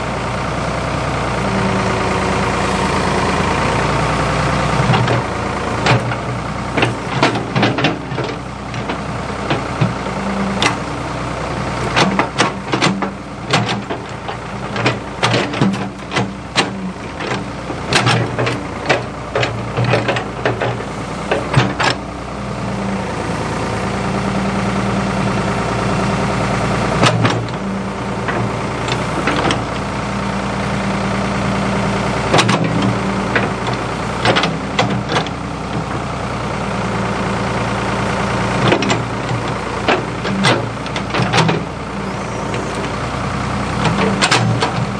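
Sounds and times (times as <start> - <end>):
backhoe engine running: 0.0 - 44.9
sharp knocks and clanks: 11.8 - 22.0, 32.3 - 35.8, 43.8 - 44.8.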